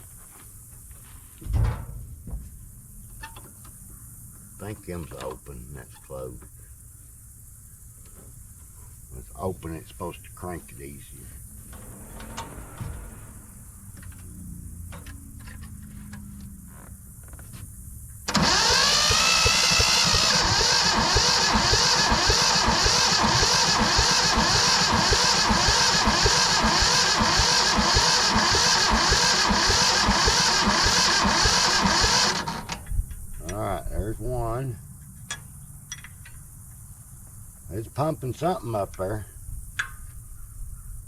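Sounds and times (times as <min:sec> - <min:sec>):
starter motor cranking engine: 0:11.6 - 0:15.8, 0:18.3 - 0:32.9.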